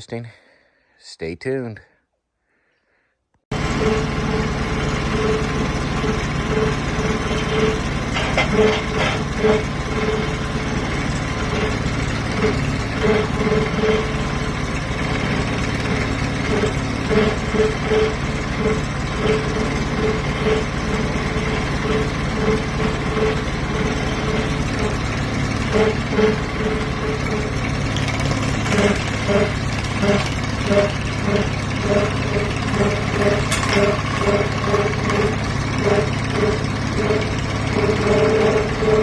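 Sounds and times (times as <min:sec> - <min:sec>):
tractor diesel engine running: 0:03.5 - 0:39.0.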